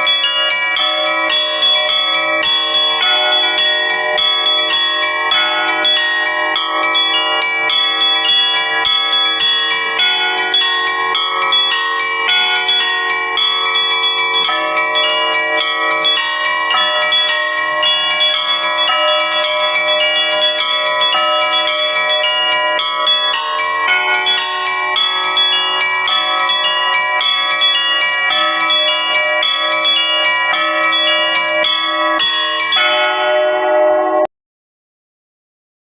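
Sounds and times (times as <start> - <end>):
church bells ringing: 0.0 - 34.3.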